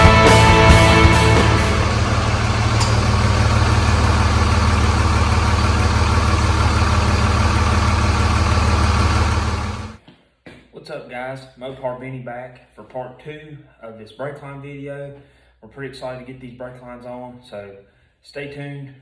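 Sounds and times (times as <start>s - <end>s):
rock music: 0.0s - 2.4s
truck engine idling: 0.0s - 10.0s.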